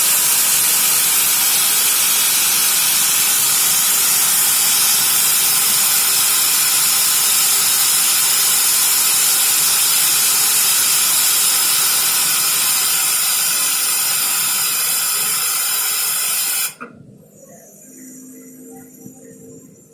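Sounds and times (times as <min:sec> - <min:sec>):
train air brakes hissing: 0:00.0 - 0:16.8
faint music: 0:16.8 - 0:19.9.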